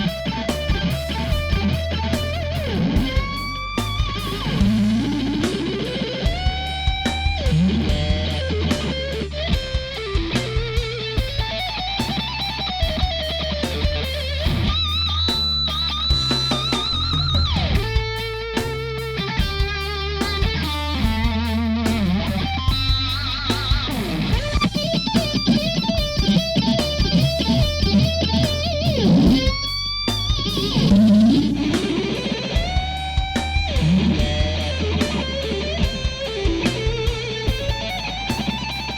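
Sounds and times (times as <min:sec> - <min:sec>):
low bass line: 0:00.0 - 0:38.9
electric guitar solo: 0:19.2 - 0:38.9.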